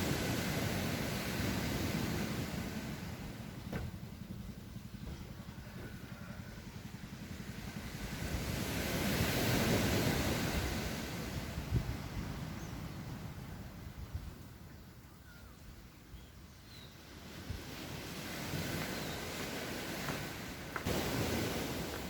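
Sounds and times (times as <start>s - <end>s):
ocean wave breaking: 0.0s - 3.6s, 7.7s - 11.8s, 17.6s - 22.0s
low surf rumble: 0.0s - 22.0s.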